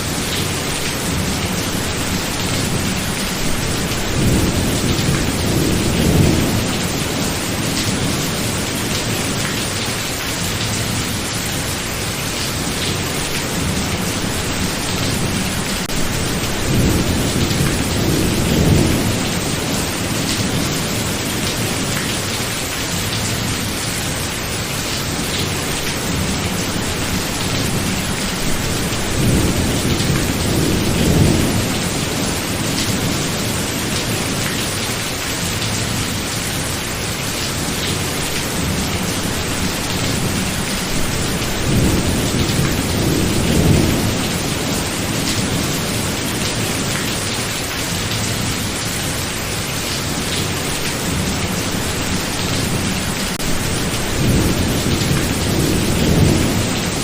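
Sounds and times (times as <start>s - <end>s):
heavy rain falling: 0.0s - 57.0s
rolling thunder: 51.0s - 57.0s.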